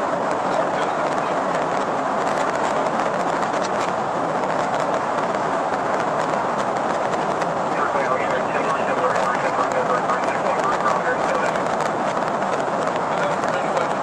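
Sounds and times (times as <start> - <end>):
car road and wind noise: 0.0 - 14.0.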